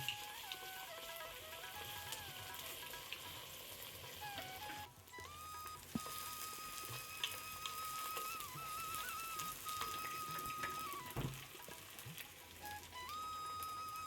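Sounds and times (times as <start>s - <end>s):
faint sizzling hiss: 0.0s - 14.0s
flute-like music: 0.0s - 14.0s
thump: 11.2s - 11.4s.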